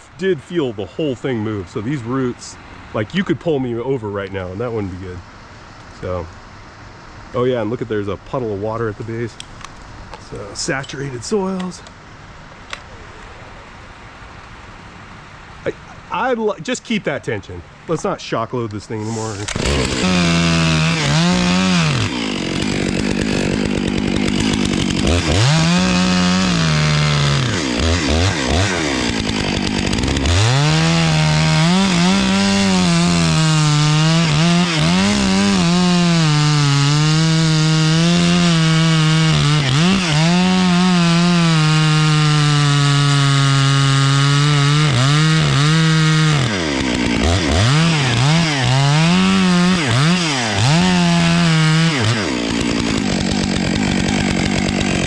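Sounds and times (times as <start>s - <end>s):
chainsaw cutting wood: 19.0s - 55.0s.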